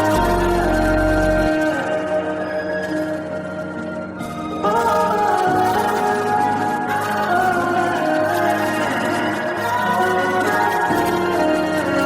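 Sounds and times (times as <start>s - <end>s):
steady bass: 0.0s - 1.6s
slow instrumental melody: 0.0s - 12.0s.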